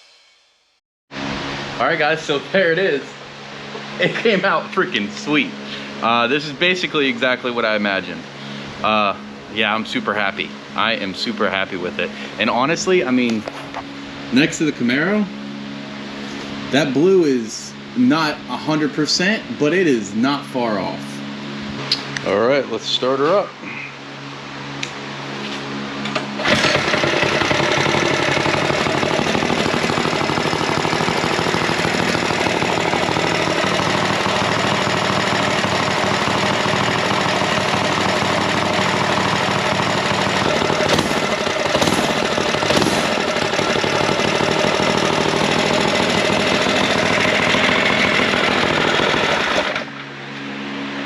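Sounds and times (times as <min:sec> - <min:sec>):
mini bike engine running: 0:26.4 - 0:50.0.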